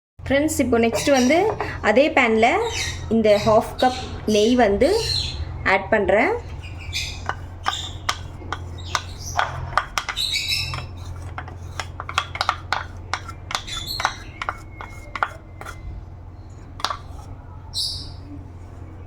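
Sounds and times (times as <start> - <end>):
birds chirping and squawking: 0.8 - 18.3
utensil tapping against pan: 7.2 - 15.8, 16.8 - 17.3.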